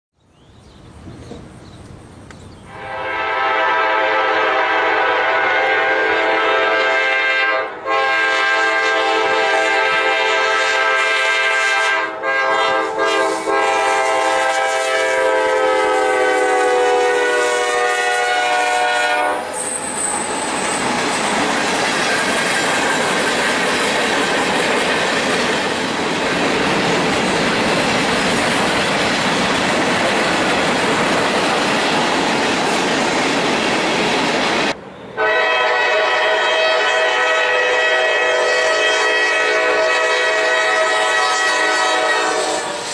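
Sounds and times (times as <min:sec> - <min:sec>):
loud horn blasts: 0:02.7 - 0:19.6, 0:35.2 - 0:42.9
steady loud rushing noise: 0:19.4 - 0:35.2.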